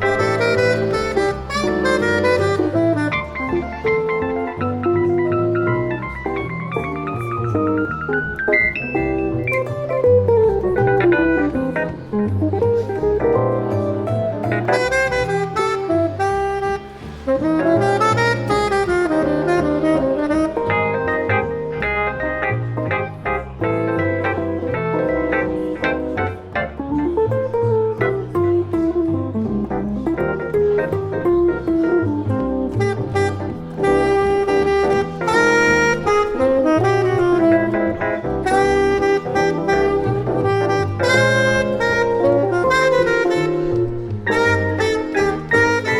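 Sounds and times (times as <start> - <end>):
tenor saxophone jazz melody: 0.0 - 45.9
walking low accompaniment: 0.0 - 45.9.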